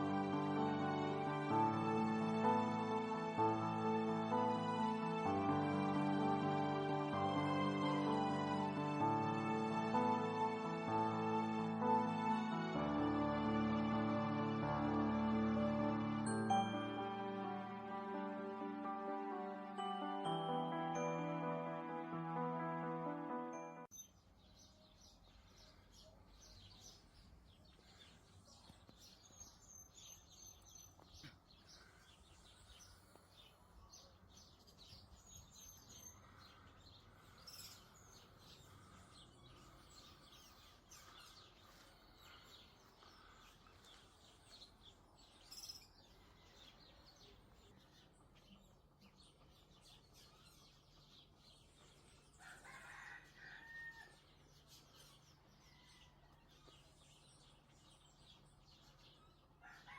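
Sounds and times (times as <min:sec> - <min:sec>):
birds chirping: 0:23.5 - 0:59.9.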